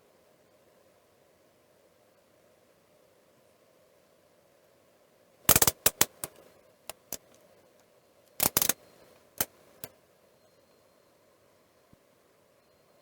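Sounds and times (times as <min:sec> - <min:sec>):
small hard objects clicking: 0:05.5 - 0:07.4, 0:08.4 - 0:08.8.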